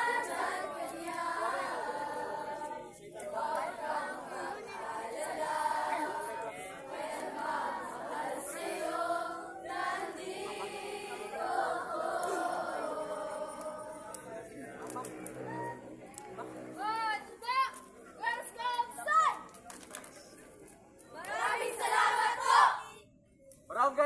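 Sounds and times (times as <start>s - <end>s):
group singing in unison: 0.0s - 14.8s, 21.2s - 22.9s.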